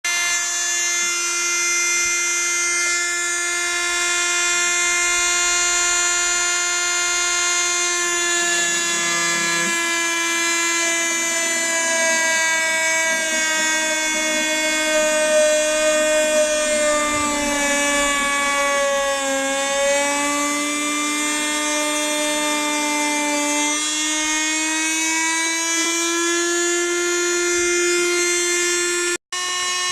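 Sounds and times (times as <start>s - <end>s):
electric drill whining: 0.1s - 29.9s.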